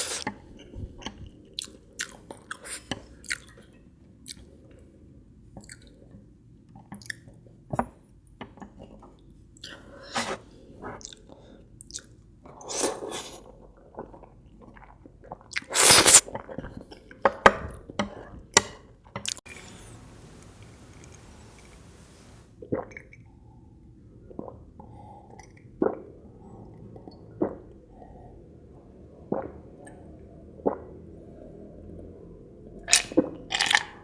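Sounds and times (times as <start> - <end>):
chewing and wet mouth sounds: 0.0 - 4.8, 5.6 - 6.2, 6.8 - 7.4, 10.8 - 16.9.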